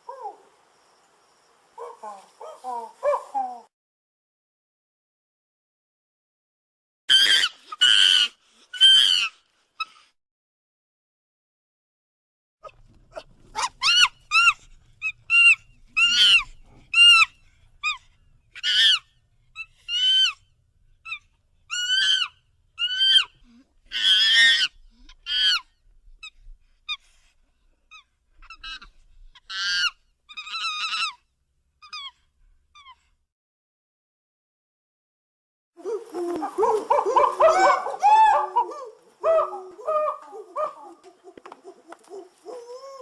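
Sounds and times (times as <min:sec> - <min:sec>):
monkey calling: 0:12.6 - 0:18.0, 0:18.6 - 0:20.4, 0:21.0 - 0:25.6, 0:27.9 - 0:31.2, 0:35.8 - 0:43.0.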